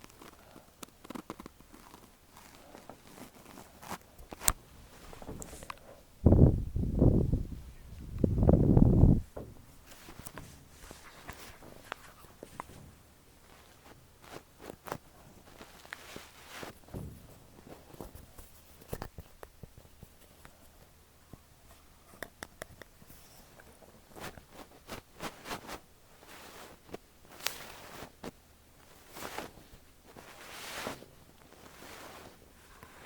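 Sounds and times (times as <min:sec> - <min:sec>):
brush swishing over microphone: 0:29.1 - 0:33.0.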